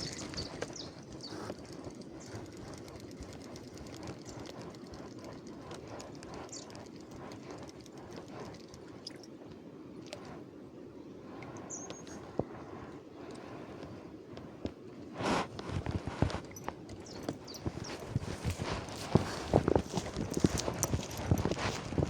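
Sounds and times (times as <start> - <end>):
footsteps crunching on stones: 17.6 - 22.0.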